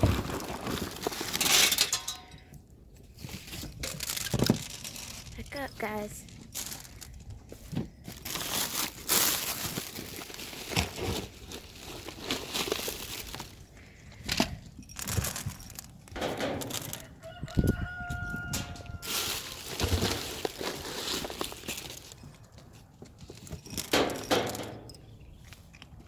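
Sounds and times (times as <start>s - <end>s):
rooster crowing: 16.9s - 19.2s.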